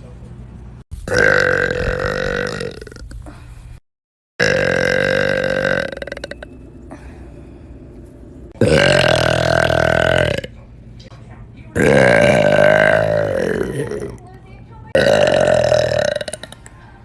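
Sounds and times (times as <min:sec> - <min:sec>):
person burping: 0:01.0 - 0:03.2, 0:04.4 - 0:07.2, 0:08.6 - 0:10.6, 0:11.8 - 0:14.2, 0:15.0 - 0:16.7.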